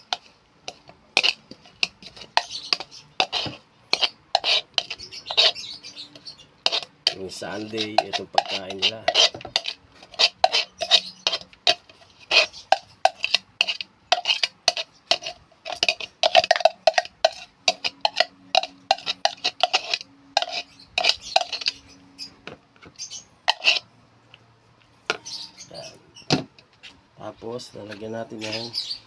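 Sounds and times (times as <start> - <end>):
utensil scraping a bowl: 0.0 - 22.0, 22.9 - 23.9.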